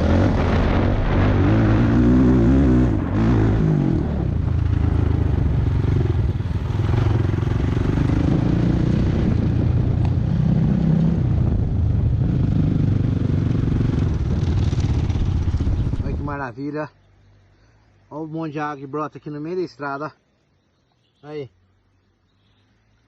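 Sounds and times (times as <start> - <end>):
motorcycle engine revving: 0.0 - 16.3.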